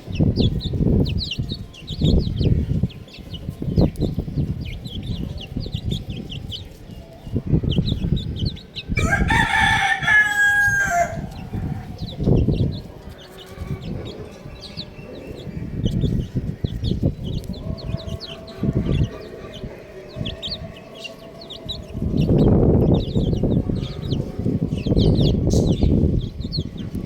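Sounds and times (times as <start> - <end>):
baby chicks peeping: 0.0 - 27.0
loud low rumbling noise: 7.4 - 27.0.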